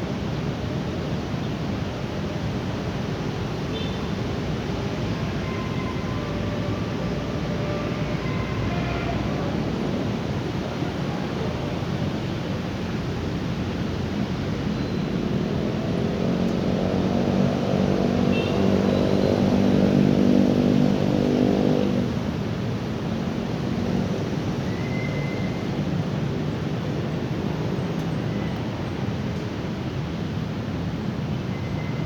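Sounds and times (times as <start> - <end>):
engine passing by: 15.2 - 22.4.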